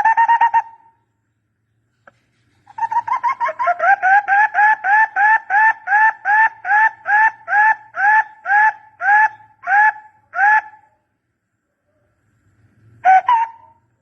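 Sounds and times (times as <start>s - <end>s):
barbet call hollow notes: 0.0s - 0.9s, 2.7s - 10.9s, 13.0s - 13.8s.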